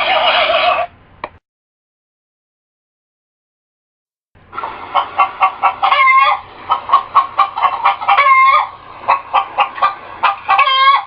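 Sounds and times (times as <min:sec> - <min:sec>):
hen cackling: 0:00.0 - 0:00.9, 0:04.9 - 0:11.0.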